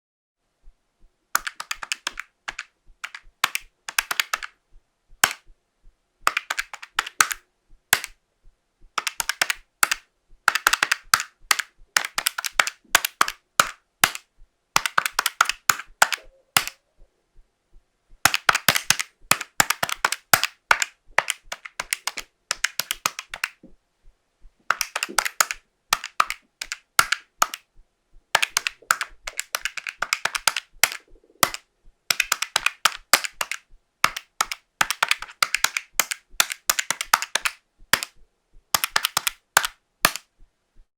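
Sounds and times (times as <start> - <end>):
calculator buttons clicking: 1.4 - 4.5, 5.2 - 5.4, 6.3 - 7.4, 8.0 - 8.2, 9.0 - 14.2, 14.8 - 16.8, 18.3 - 23.6, 24.6 - 27.7, 28.3 - 38.2, 38.8 - 40.3.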